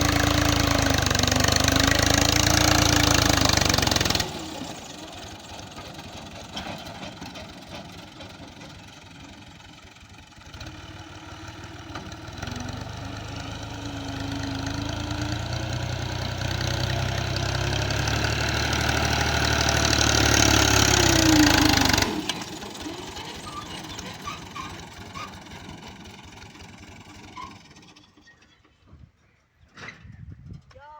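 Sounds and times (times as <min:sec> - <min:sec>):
heavy machine engine revving: 0:00.0 - 0:09.0, 0:10.4 - 0:27.9.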